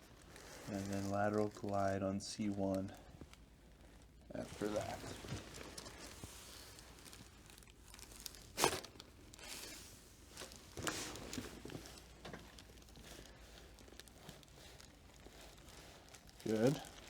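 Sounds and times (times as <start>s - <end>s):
crinkling and rustling on table: 0.0s - 17.0s
sharp spinal crack: 8.5s - 9.0s.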